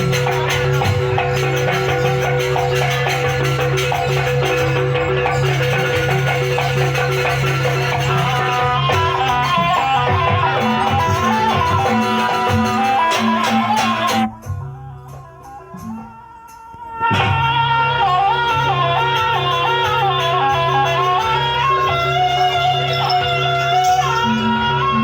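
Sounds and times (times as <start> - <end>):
wavering melody line: 0.0 - 16.6
metallophones playing: 0.0 - 17.0
rhythmic percussion: 0.0 - 25.0.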